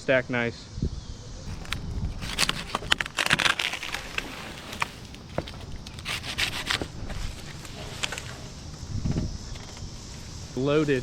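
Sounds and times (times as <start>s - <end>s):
wood debris crunching and cracking: 1.5s - 8.6s.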